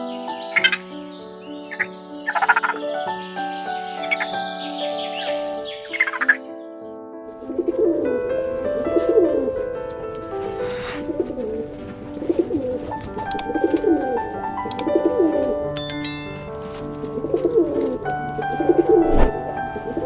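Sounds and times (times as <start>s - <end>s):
background music with held notes: 0.0s - 20.0s
animal calls sliding in pitch: 10.6s - 11.3s.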